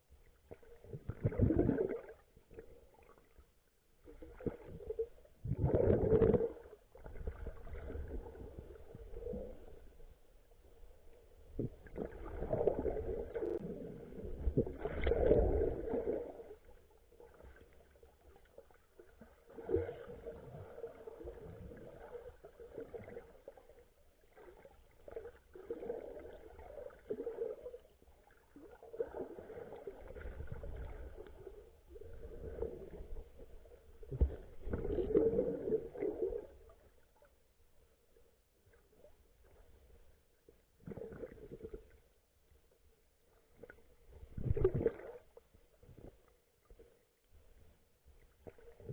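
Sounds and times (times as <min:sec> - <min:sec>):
muffled seawater sloshing: 0:04.0 - 0:37.5.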